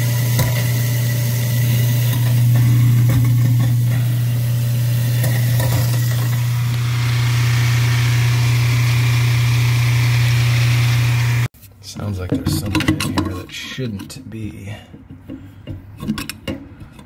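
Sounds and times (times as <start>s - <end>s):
garbage disposal humming: 0.0s - 11.5s.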